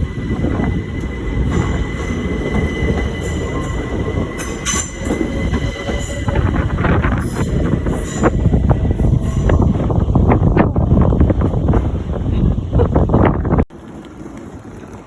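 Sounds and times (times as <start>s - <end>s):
train rumbling on rails: 0.0s - 15.0s.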